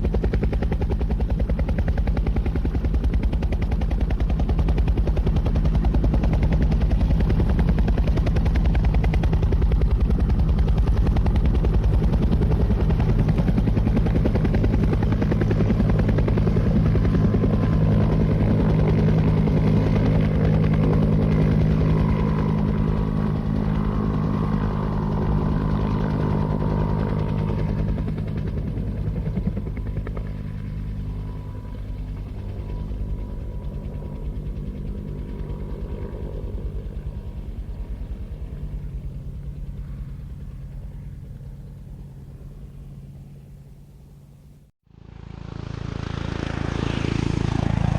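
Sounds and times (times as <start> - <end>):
helicopter rotor chop: 0.0 - 43.1, 45.0 - 47.9.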